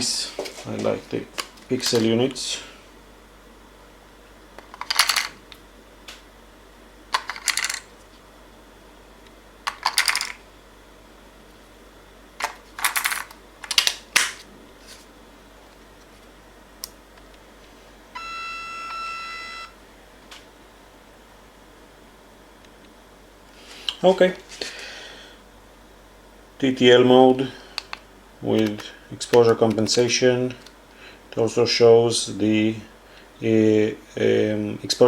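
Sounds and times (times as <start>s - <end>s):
batteries clicking and rattling: 4.6s - 5.4s, 7.1s - 7.9s, 9.6s - 10.4s, 12.4s - 14.0s
camera flash electronic tone: 18.2s - 19.7s.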